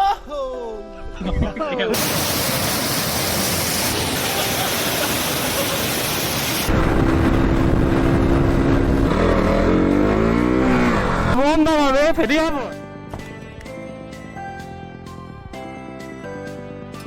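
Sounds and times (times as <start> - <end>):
waterfall roaring: 2.0 - 6.8
motorcycle engine revving: 6.7 - 11.5.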